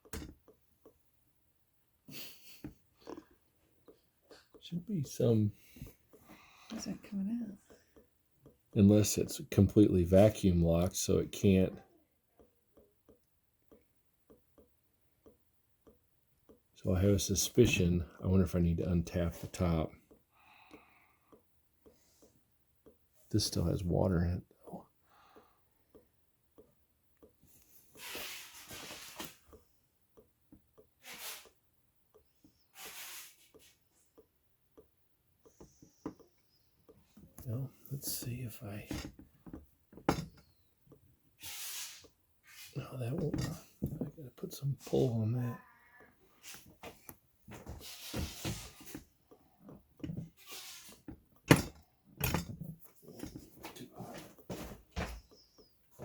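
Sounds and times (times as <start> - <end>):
short hisses of air: 28.0 - 29.3, 31.0 - 31.6, 32.7 - 33.6, 41.4 - 42.8, 50.4 - 51.0
glass coffee maker knocking and clinking: 38.9 - 40.4, 51.5 - 52.6.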